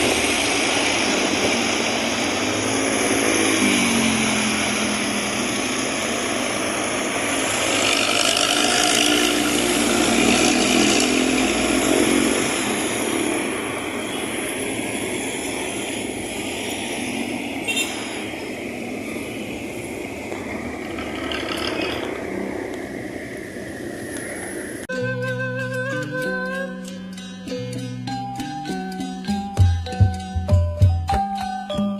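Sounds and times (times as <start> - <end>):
bus exhaust growling: 0.0 - 25.0.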